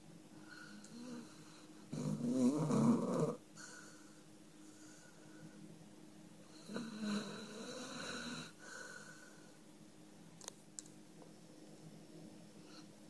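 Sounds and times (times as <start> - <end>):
dog snoring: 0.6 - 4.0, 6.5 - 9.1.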